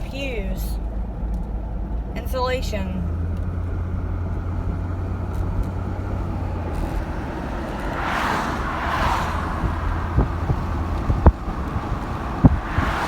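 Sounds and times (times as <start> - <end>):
car engine and tyre rumble: 0.0 - 13.0
rush of passing noise: 6.1 - 13.0.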